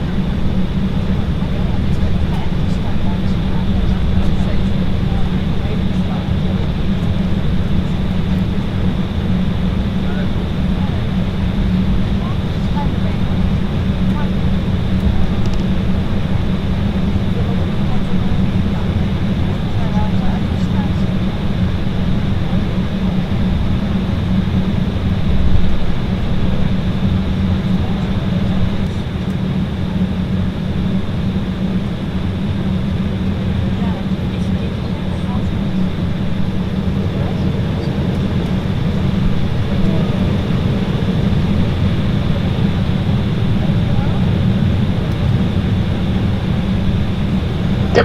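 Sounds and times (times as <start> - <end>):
jet engines rumbling in cabin: 0.0 - 48.0.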